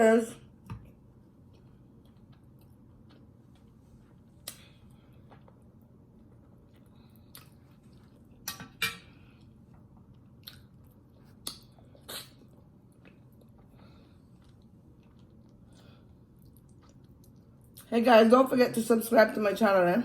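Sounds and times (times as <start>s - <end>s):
soft chewing: 0.4s - 17.9s
wet mouth smacks and clicks: 11.4s - 12.5s.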